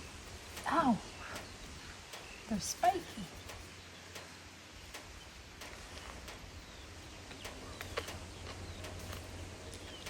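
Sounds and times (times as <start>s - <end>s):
bird chirps: 0.0s - 10.0s.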